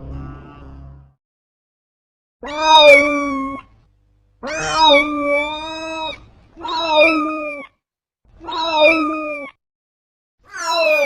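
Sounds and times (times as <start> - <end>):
cat meowing: 2.4 - 3.7, 4.4 - 7.7, 8.4 - 9.5, 10.5 - 11.0.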